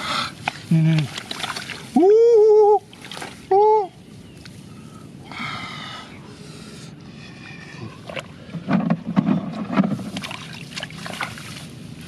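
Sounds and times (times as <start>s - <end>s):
splashes and knocks in water: 0.4s - 2.0s, 2.9s - 3.4s, 8.0s - 11.8s.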